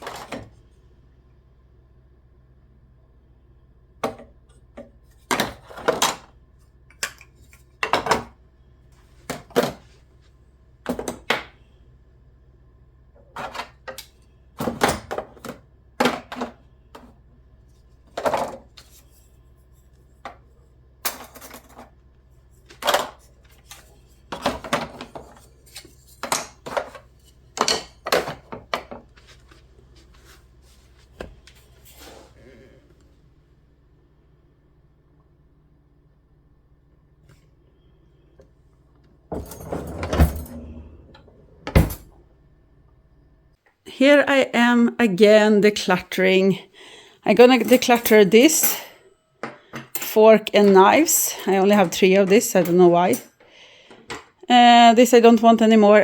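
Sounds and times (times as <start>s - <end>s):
faint low hum: 0.0s - 56.0s
kitchenware clinking and clattering: 22.8s - 29.0s, 39.3s - 42.1s, 47.4s - 53.4s.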